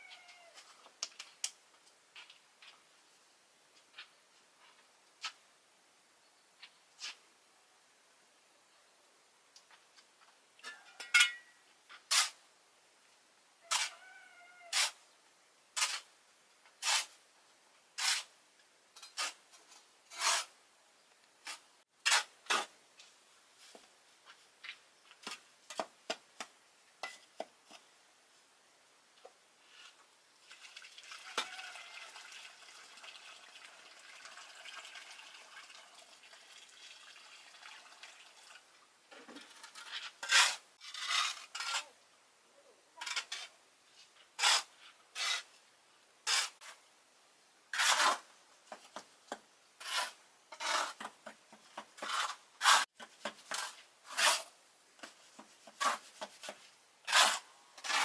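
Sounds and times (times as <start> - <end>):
soft steady hiss: 0.0 - 58.0
hard tool scraping gritty surface: 15.8 - 16.1, 16.8 - 17.2, 18.0 - 18.3, 19.0 - 20.5, 39.4 - 41.9, 44.4 - 45.5, 46.2 - 46.8, 47.7 - 48.3, 49.8 - 58.0.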